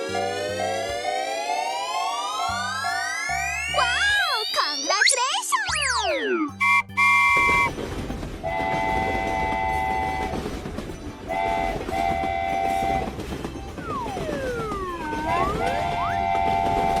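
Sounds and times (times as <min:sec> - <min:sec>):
train rumbling on track: 0:00.0 - 0:01.9, 0:06.6 - 0:17.0
train horn blasts: 0:06.6 - 0:07.8, 0:08.4 - 0:10.6, 0:11.3 - 0:13.3, 0:15.6 - 0:17.0.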